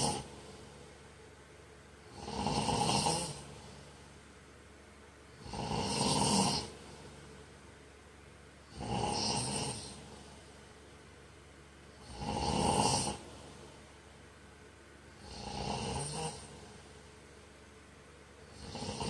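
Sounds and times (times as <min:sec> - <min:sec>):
man snoring: 0:00.0 - 0:00.4, 0:02.1 - 0:03.7, 0:05.4 - 0:06.8, 0:08.7 - 0:10.2, 0:12.0 - 0:13.3, 0:15.2 - 0:16.8, 0:18.5 - 0:19.0
quiet breathing: 0:00.0 - 0:01.2, 0:02.0 - 0:04.3, 0:05.3 - 0:07.5, 0:08.6 - 0:10.8, 0:11.8 - 0:14.1, 0:15.0 - 0:17.5.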